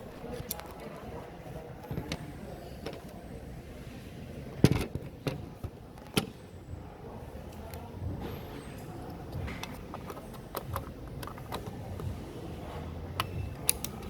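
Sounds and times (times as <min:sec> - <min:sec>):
laptop handling clicks and knocks: 0:04.6 - 0:06.4, 0:09.4 - 0:12.2, 0:13.2 - 0:14.0.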